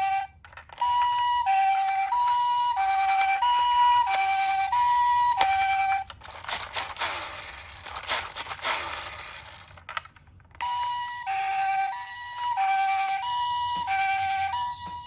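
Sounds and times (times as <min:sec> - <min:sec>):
toy two-tone siren: 0:00.0 - 0:09.7, 0:10.6 - 0:15.0
scraping crinkling noise: 0:06.0 - 0:10.6.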